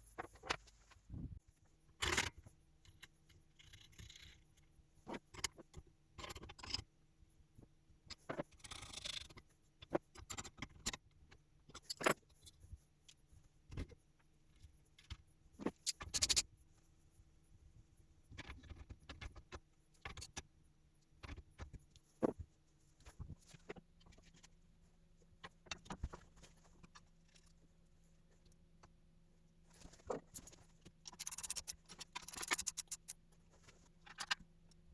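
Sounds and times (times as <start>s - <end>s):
metal parts and tools clinking: 29.8s - 33.2s.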